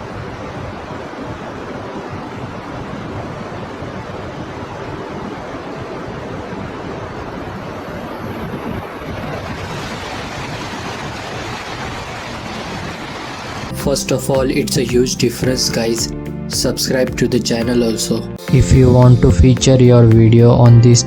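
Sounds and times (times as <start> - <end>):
high-speed train rushing past: 3.3 - 13.7.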